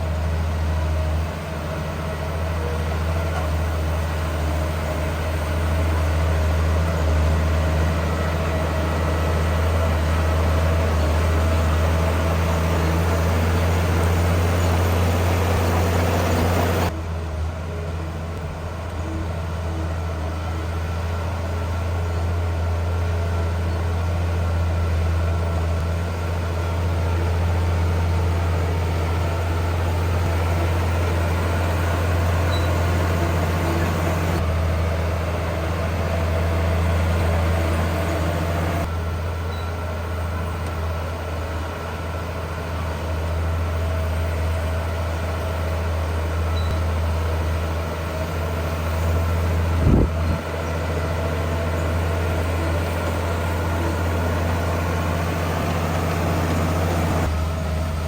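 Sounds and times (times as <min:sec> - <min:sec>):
heavy diesel machinery droning: 0:00.0 - 0:58.0.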